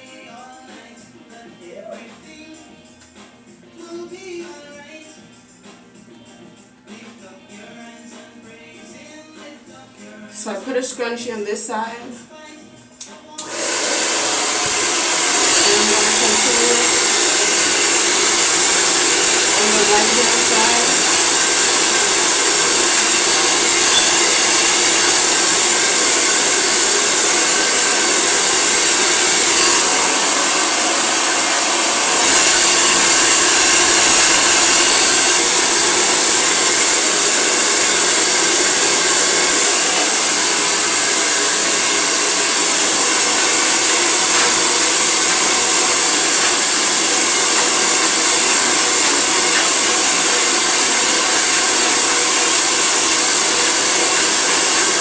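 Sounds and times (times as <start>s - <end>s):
hair dryer running: 0.0s - 0.9s, 13.3s - 55.0s.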